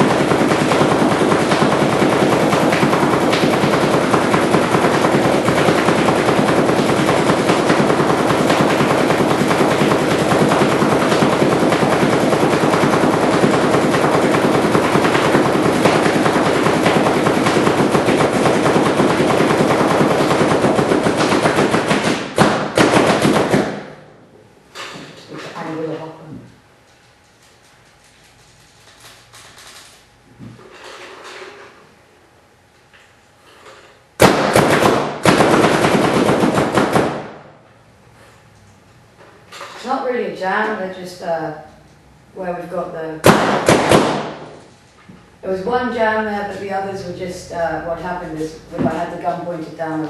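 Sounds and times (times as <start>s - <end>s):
paintball marker firing: 43.2s - 44.6s.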